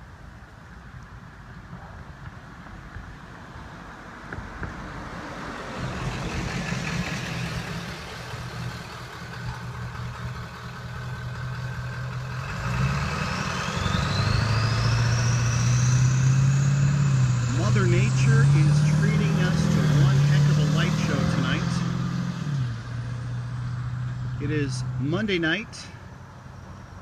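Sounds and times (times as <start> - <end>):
vehicle engine humming: 0.0 - 27.0
rising whine: 12.4 - 25.1.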